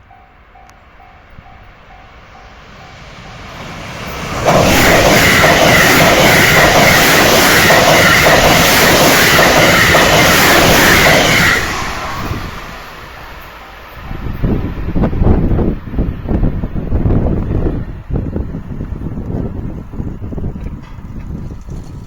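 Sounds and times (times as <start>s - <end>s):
level crossing warning bell: 0.0s - 3.6s, 12.9s - 14.5s
train passing: 0.0s - 22.0s.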